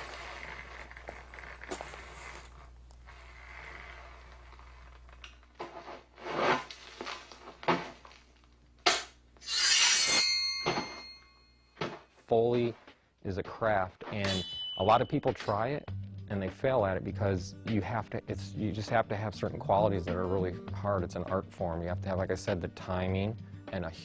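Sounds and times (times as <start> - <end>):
loud scrape with metallic ring: 9.4 - 11.6.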